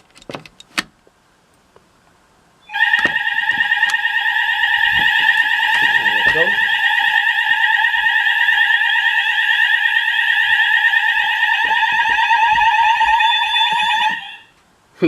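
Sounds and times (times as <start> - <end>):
fire alarm warbling tone: 2.6 - 14.5.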